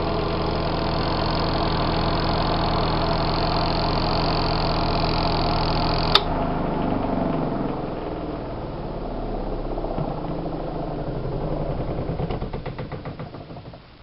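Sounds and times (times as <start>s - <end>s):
washing machine motor humming: 0.0s - 14.0s
sharp click: 6.1s - 6.3s.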